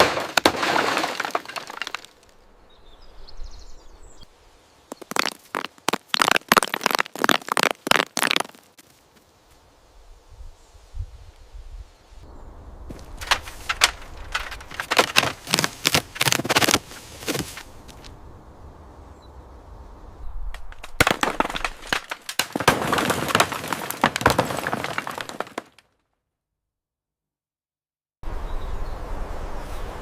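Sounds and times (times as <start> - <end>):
hard debris clattering: 0.0 - 2.2, 12.9 - 17.5, 20.7 - 25.8.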